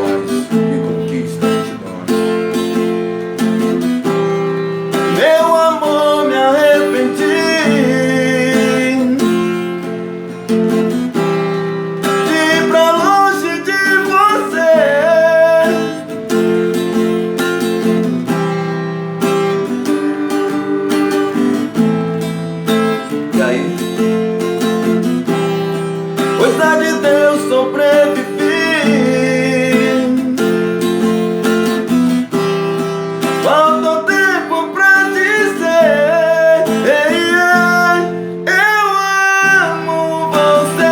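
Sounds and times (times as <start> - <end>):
acoustic guitar strumming chords: 0.0 - 40.9
wordless vocal melody: 0.0 - 40.9.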